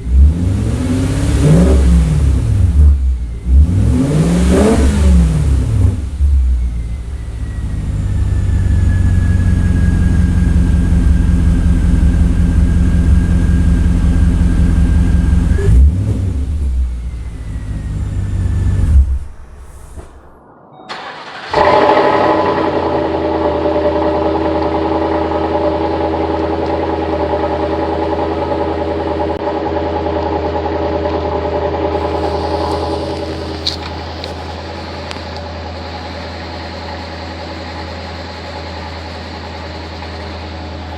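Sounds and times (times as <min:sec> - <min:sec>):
car engine idling: 0:01.0 - 0:40.9.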